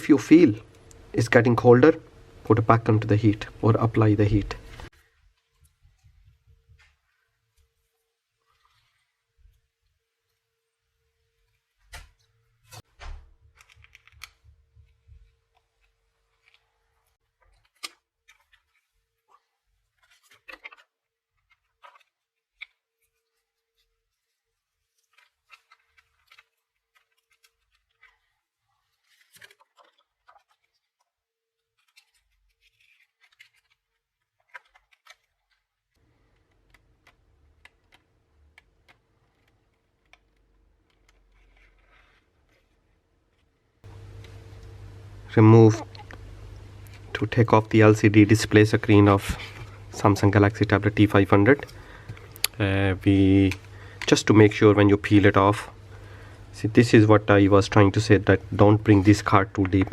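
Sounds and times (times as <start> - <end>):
plastic pry cards scraping: 31.7 - 42.8.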